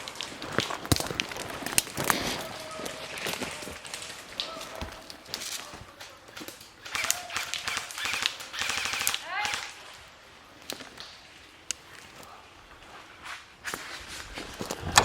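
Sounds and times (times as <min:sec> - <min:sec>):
distant shouting: 0:02.4 - 0:10.1
airsoft guns firing: 0:06.8 - 0:09.8.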